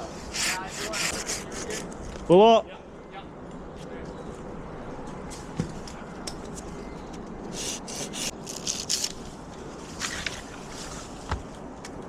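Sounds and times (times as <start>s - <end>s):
short rasping rubs: 0.0s - 1.9s, 7.5s - 9.0s.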